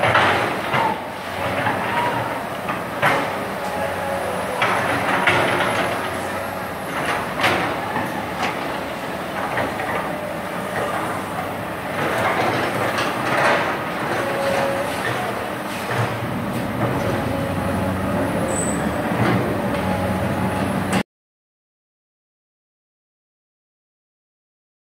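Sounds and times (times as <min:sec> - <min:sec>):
diesel engine running under load: 0:00.0 - 0:21.0
thin machine squeals: 0:18.4 - 0:19.2.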